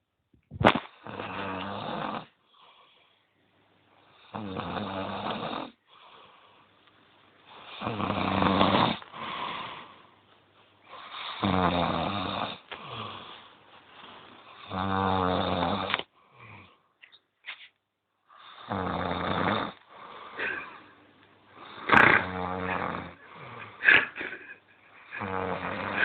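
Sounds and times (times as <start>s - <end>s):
person snoring loudly: 1.0s - 2.3s, 4.2s - 5.8s, 7.7s - 9.8s, 11.2s - 13.2s, 14.6s - 16.0s, 18.5s - 19.8s, 21.6s - 24.4s, 25.0s - 26.0s
quiet breathing: 2.3s - 4.4s, 5.7s - 8.0s, 9.0s - 11.4s, 12.4s - 14.8s, 16.0s - 17.1s, 19.8s - 26.0s.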